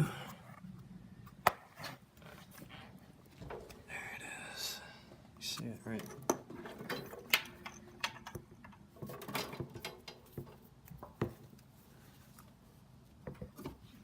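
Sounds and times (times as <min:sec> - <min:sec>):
metal tools clinking and rattling: 0:05.9 - 0:10.6.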